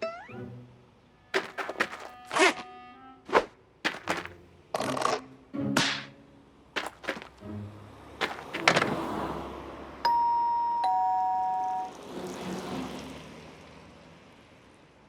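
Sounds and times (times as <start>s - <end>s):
two-tone doorbell chime: 10.0s - 12.0s.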